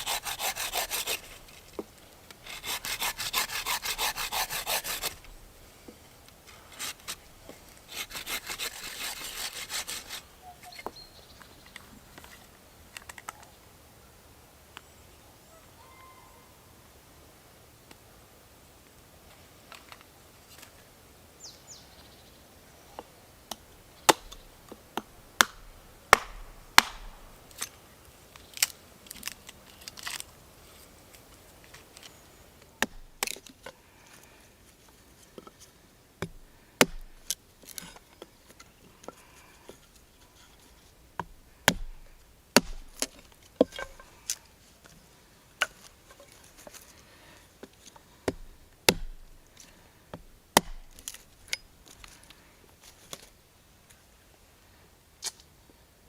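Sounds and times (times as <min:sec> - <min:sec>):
firewood being split: 0:23.5 - 0:27.8, 0:32.8 - 0:33.8, 0:36.2 - 0:40.2, 0:41.1 - 0:44.4, 0:48.2 - 0:52.2.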